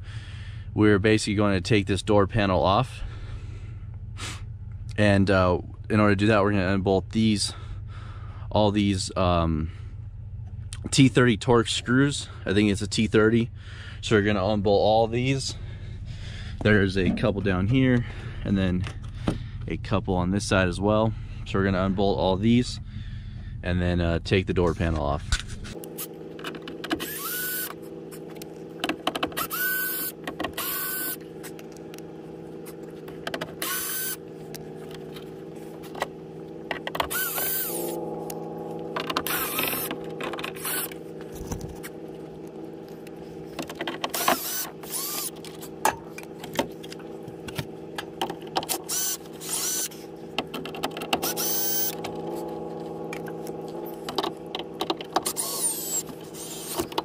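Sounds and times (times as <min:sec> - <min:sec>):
steady low hum: 0:00.0 - 0:57.0
cordless drill whirring: 0:25.8 - 0:45.8, 0:48.6 - 0:50.1, 0:50.8 - 0:57.0.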